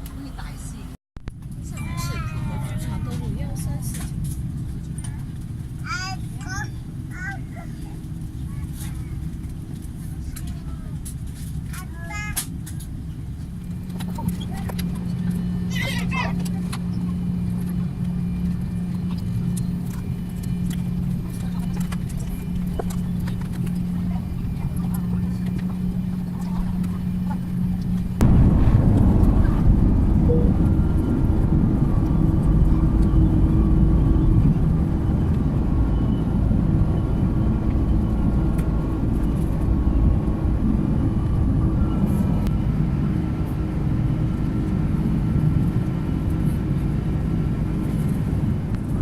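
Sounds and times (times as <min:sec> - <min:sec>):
aircraft cabin hum: 0:00.0 - 0:49.0
faint engine tones: 0:00.0 - 0:49.0
low rumble: 0:12.6 - 0:49.0.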